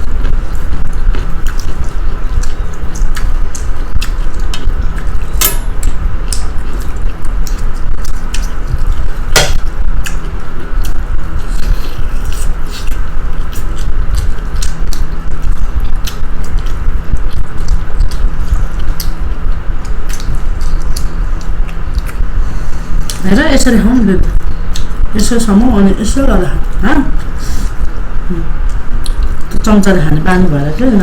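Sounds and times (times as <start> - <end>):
wet squishy eating: 0.0 - 9.2, 9.9 - 23.6
low rumble: 0.0 - 31.0.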